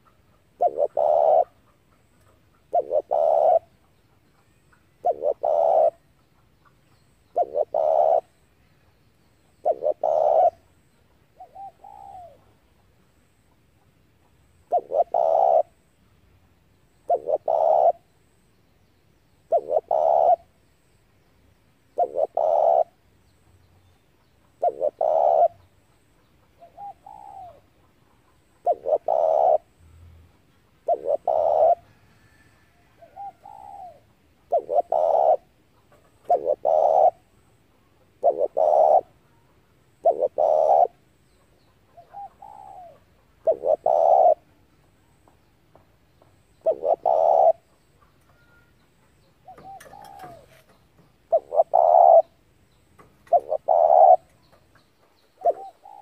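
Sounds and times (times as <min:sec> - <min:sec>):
dove cooing: 0:00.0 - 0:06.1, 0:07.3 - 0:08.4, 0:09.6 - 0:10.8, 0:11.4 - 0:12.6, 0:14.6 - 0:15.8, 0:17.1 - 0:18.1, 0:19.5 - 0:20.6, 0:21.9 - 0:23.0, 0:24.5 - 0:25.7, 0:26.5 - 0:29.8, 0:30.8 - 0:41.0, 0:41.9 - 0:44.6, 0:46.5 - 0:52.4, 0:53.0 - 0:54.6, 0:55.4 - 0:56.0.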